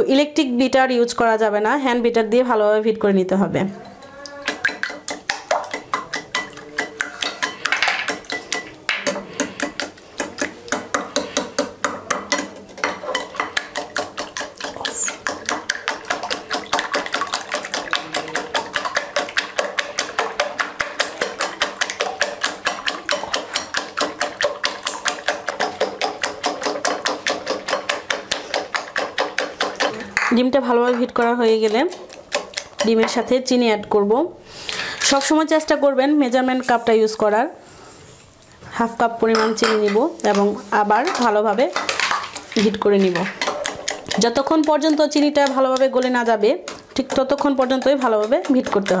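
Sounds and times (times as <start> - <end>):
whisk clicking against bowl: 4.3 - 33.2, 39.3 - 49.0.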